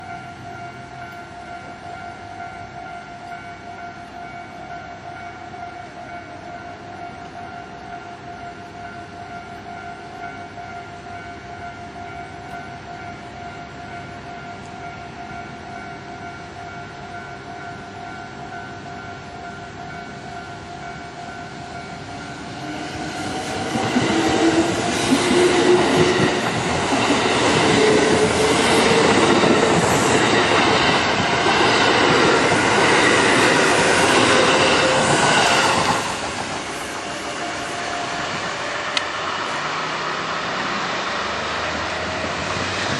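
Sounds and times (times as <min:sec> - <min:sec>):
electric train passing: 0:00.0 - 0:42.9
train wheel clatter: 0:21.9 - 0:39.7.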